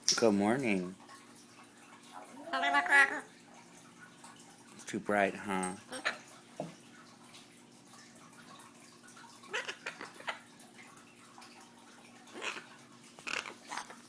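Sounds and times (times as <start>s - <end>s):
macaw hiccuping: 9.5s - 10.4s.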